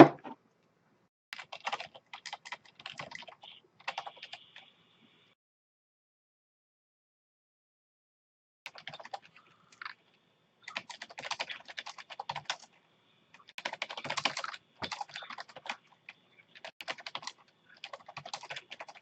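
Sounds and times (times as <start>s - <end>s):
computer keyboard typing: 1.4s - 4.7s, 8.7s - 10.0s, 10.6s - 19.0s.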